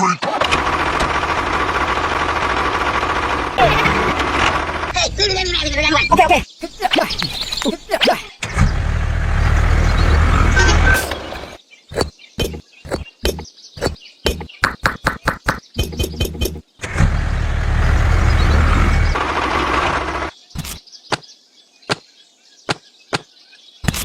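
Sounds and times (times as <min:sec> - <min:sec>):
motor rumbling: 0:00.4 - 0:05.4, 0:08.4 - 0:11.6, 0:15.8 - 0:20.3.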